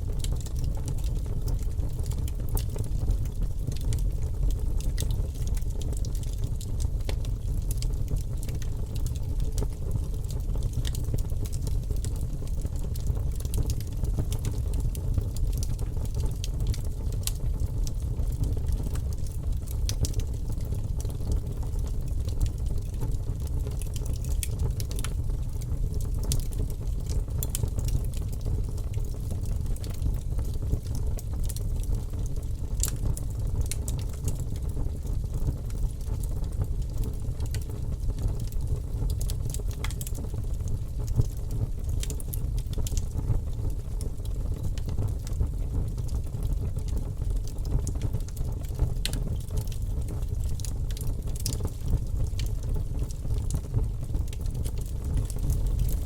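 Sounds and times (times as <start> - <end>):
low fire rumble: 0.0 - 56.0
wood crackling and popping: 0.1 - 56.0.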